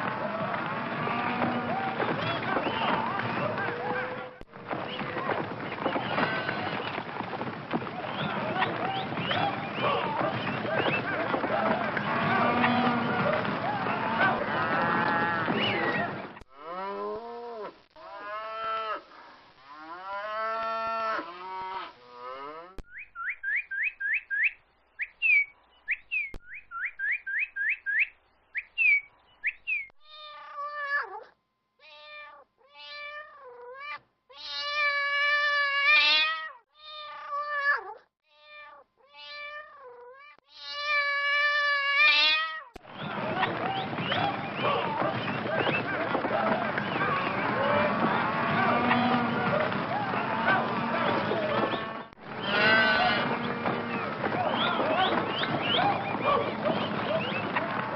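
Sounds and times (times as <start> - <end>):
cat meowing: 30.0 - 42.7
falling pitched animal calls: 39.2 - 57.8.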